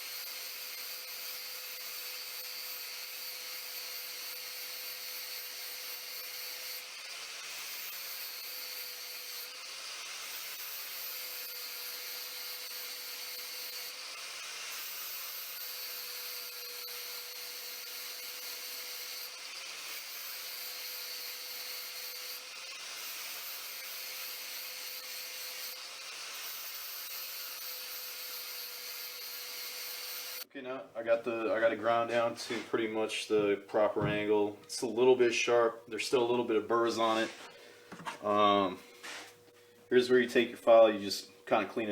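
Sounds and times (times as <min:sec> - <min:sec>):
angle grinder grinding metal blade: 0:00.0 - 0:30.5.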